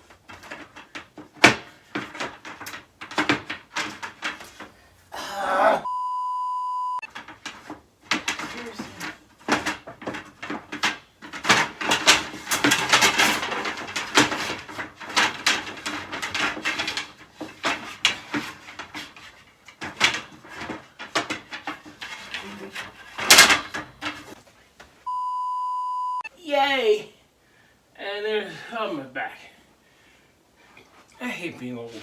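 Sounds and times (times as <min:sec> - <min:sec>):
bed-frame parts knocking and clattering: 0:00.0 - 0:05.0, 0:07.0 - 0:25.0.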